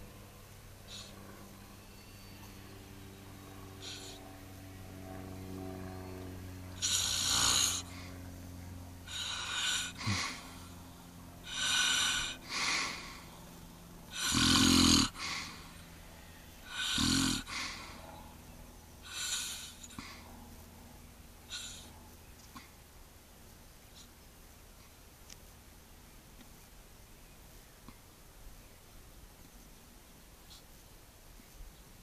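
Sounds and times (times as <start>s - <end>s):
steady low hum: 0.0s - 32.0s
man snoring: 6.8s - 8.1s, 9.1s - 10.5s, 11.4s - 13.2s, 14.1s - 15.7s, 16.7s - 18.0s, 19.0s - 20.0s.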